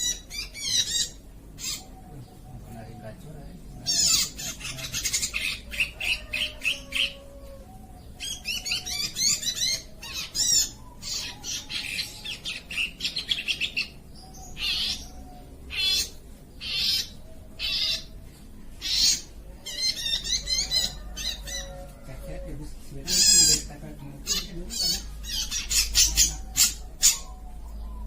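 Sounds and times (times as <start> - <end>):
bird warbling song: 0.0 - 28.0.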